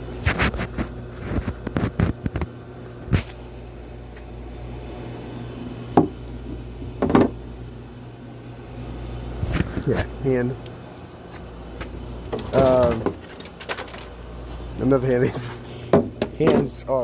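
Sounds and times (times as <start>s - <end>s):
steady low hum: 0.0s - 17.0s
packaging clicks and rustles: 12.4s - 14.2s.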